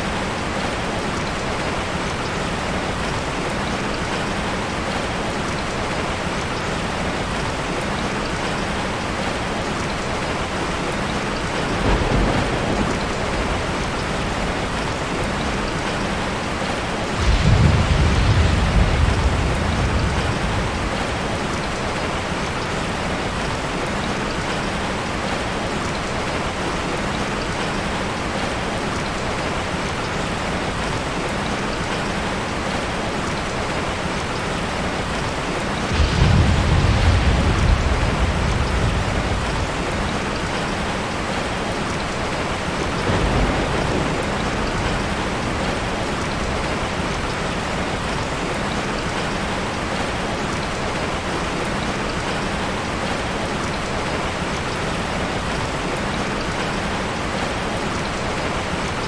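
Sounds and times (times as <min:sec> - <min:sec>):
heavy rain falling: 0:00.0 - 0:59.0
thunder rolling: 0:11.6 - 0:15.6, 0:17.1 - 0:22.4, 0:35.8 - 0:40.9, 0:42.8 - 0:47.3.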